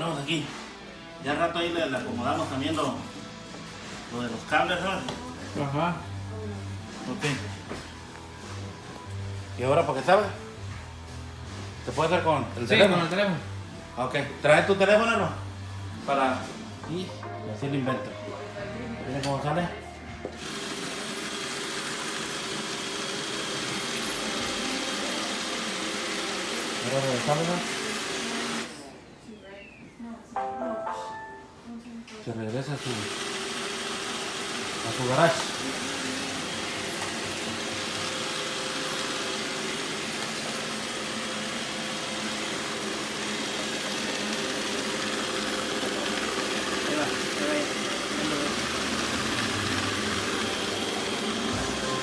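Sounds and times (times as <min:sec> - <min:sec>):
robot vacuum whirring: 0:20.4 - 0:28.7, 0:32.8 - 0:52.0
robot vacuum hissing: 0:40.9 - 0:52.0.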